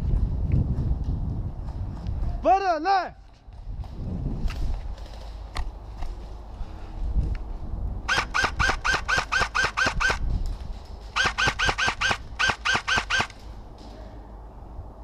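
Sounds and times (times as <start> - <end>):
airsoft rifle firing rapid shots: 8.1 - 10.2, 11.2 - 13.4.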